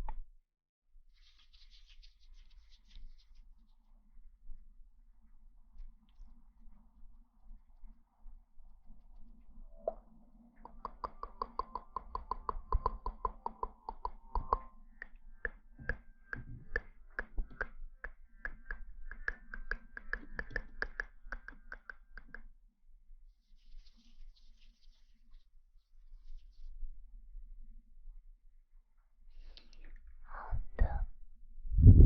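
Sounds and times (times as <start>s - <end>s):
rapid ringing taps: 10.7s - 22.4s.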